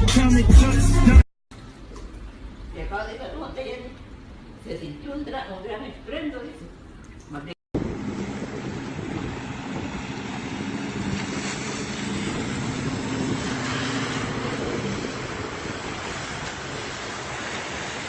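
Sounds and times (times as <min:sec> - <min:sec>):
engine hum: 0:07.8 - 0:18.0.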